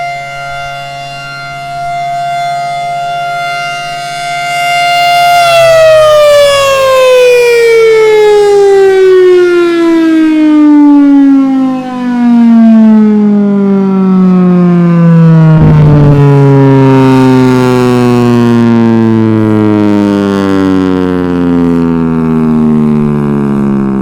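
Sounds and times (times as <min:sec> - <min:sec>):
civil defense siren winding down: 0:00.0 - 0:24.0
low rumble: 0:15.6 - 0:17.8.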